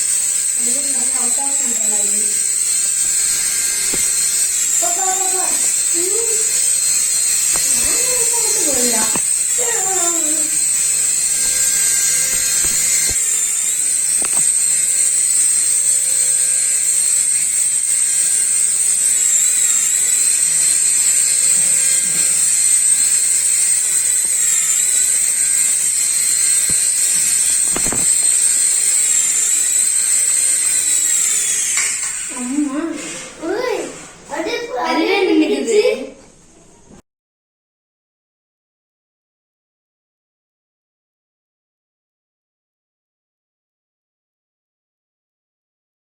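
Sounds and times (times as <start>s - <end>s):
toy electric motor whining: 0.0s - 36.7s.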